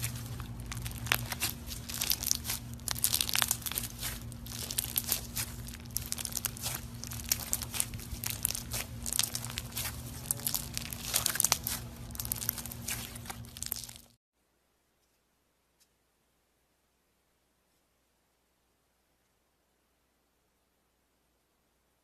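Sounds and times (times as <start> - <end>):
steady low hum: 0.0 - 14.1
slime crackling and popping: 0.0 - 14.2.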